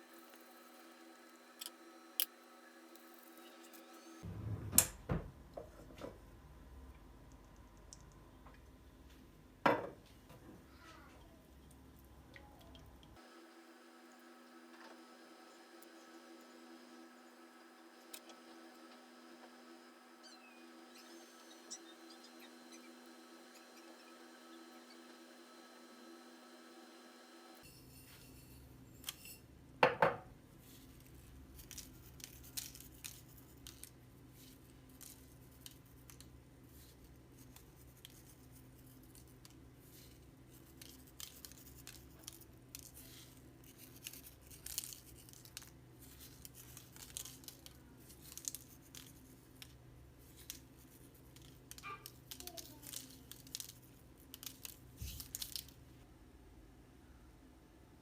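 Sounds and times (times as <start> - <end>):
objects being handled: 30.7 - 56.0.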